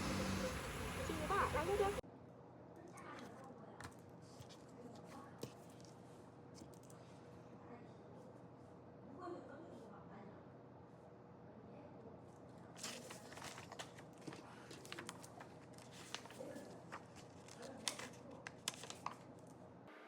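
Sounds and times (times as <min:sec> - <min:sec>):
low steady hum: 0:00.0 - 0:02.0.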